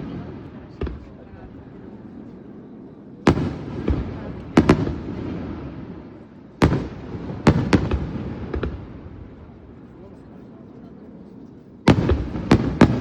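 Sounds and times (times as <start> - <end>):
fireworks bursting with bangs: 0.0 - 1.9, 3.2 - 9.7, 11.8 - 13.0.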